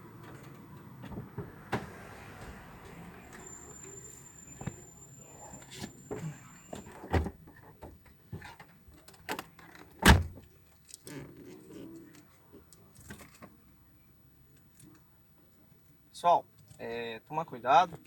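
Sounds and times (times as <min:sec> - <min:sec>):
faint high steady tone: 0:02.3 - 0:07.1.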